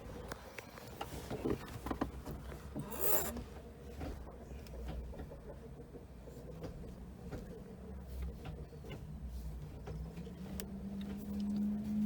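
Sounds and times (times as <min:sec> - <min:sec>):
zipper pulled: 0:02.9 - 0:03.4.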